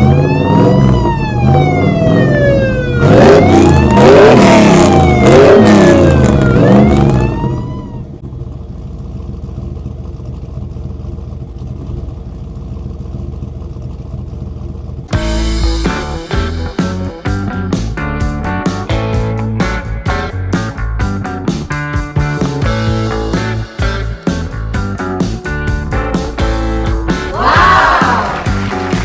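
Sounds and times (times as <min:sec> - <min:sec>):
police siren wailing: 0:00.0 - 0:08.2, 0:27.2 - 0:29.0
steady low drone: 0:15.1 - 0:29.0.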